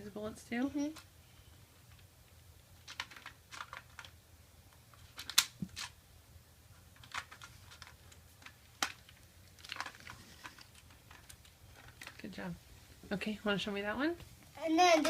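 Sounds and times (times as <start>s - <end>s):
plastic toy clicks and knocks: 2.8s - 4.2s, 5.0s - 6.0s.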